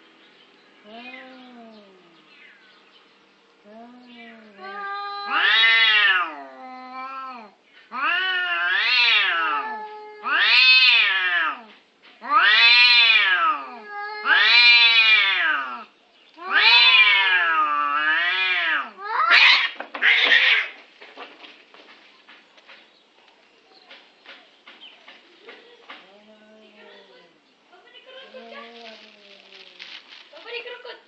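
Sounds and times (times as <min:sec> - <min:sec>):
cats yowling: 0:00.8 - 0:02.2, 0:04.1 - 0:20.8, 0:28.3 - 0:30.2.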